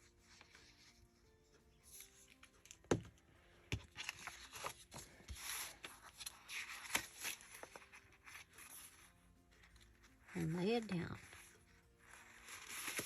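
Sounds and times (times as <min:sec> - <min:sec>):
paper rustling and rubbing: 0:03.9 - 0:13.0.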